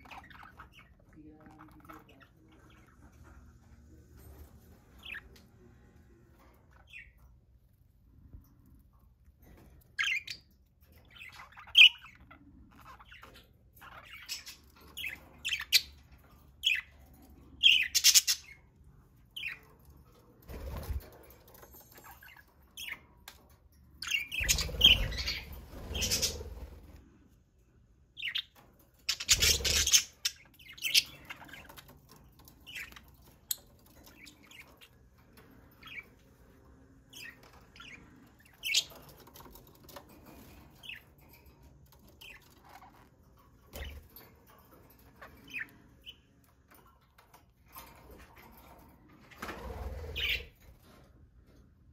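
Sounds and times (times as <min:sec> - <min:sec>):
budgerigars chirping: 0:24.0 - 0:26.5.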